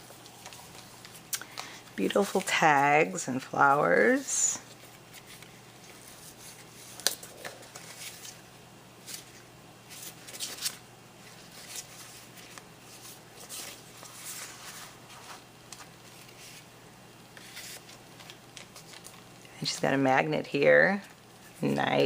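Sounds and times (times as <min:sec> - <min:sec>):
rustling of cardstock and paper: 0:00.0 - 0:03.2, 0:04.0 - 0:08.4, 0:09.0 - 0:16.7, 0:17.3 - 0:19.3.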